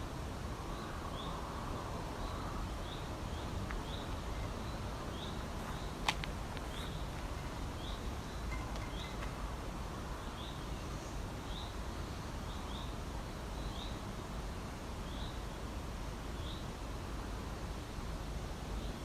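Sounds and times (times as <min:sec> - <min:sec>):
low outdoor air rumble: 0:00.0 - 0:19.0
small bird chirping: 0:02.2 - 0:09.4.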